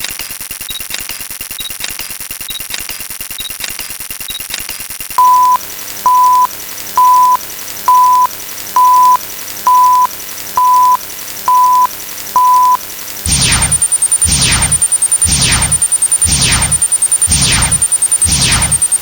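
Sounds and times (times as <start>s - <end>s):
fast buzzing clicks: 0.0s - 5.2s, 6.2s - 19.0s
faint hum: 5.2s - 19.0s
short electronic beeps: 5.2s - 19.0s
falling electronic sweep: 13.3s - 19.0s
high whine: 13.3s - 19.0s.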